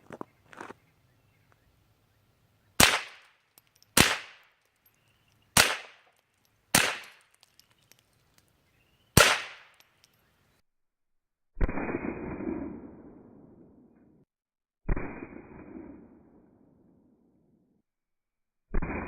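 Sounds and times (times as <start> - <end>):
rifle shots with echo: 2.8 - 3.3, 4.0 - 4.4, 5.6 - 6.0, 6.7 - 7.2, 9.2 - 9.8.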